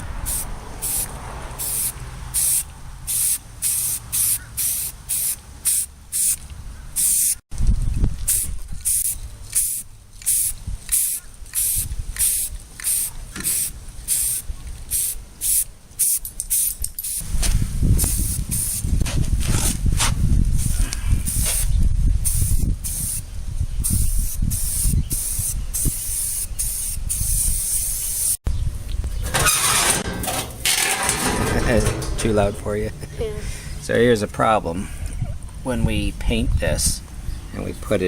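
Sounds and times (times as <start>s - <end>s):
short bursts of spraying hiss: 0.3s - 6.4s, 7.0s - 7.4s, 8.3s - 17.2s, 21.3s - 21.7s, 22.3s - 23.2s, 23.8s - 28.4s.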